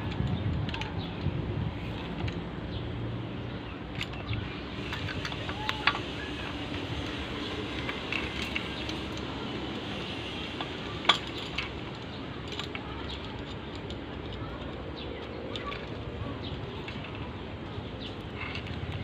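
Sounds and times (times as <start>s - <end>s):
steady background noise: 0.0s - 19.0s
metal tools clinking: 3.9s - 19.0s.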